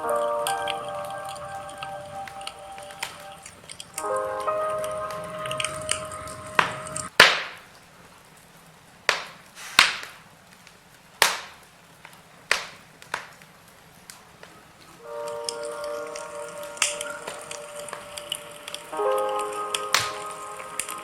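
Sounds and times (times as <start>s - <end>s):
burning logs crackling: 0.0s - 21.0s
sharp pops of fire: 4.8s - 7.7s, 9.1s - 13.5s, 15.3s - 21.0s
faint hiss: 9.4s - 10.9s, 12.8s - 21.0s.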